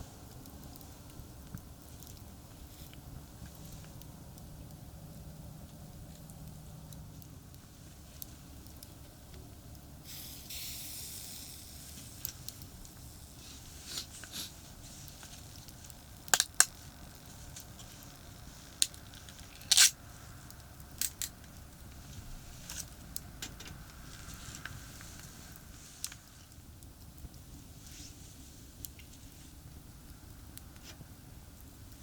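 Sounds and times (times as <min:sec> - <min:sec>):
distant traffic rumble: 0:00.0 - 0:10.0, 0:11.0 - 0:27.7.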